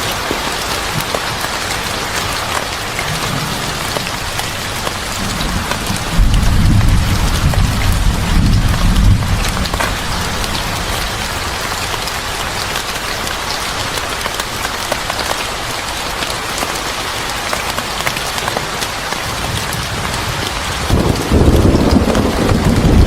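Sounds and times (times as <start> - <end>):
steady rain with drips: 0.0 - 23.0
low rumble of thunder: 3.0 - 12.0, 19.3 - 23.0.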